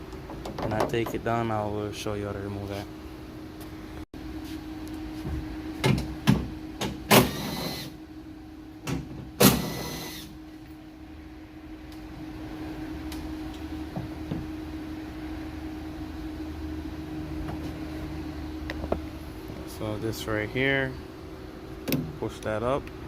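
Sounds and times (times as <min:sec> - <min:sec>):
steady low hum: 0:00.0 - 0:23.0
power tool bursts: 0:07.1 - 0:08.0, 0:09.4 - 0:10.3.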